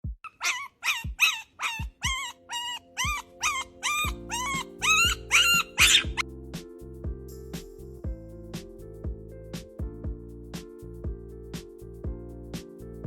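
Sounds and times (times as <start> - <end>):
puppy yipping and whining: 0.2 - 6.2
background music with steady beat: 1.0 - 13.0.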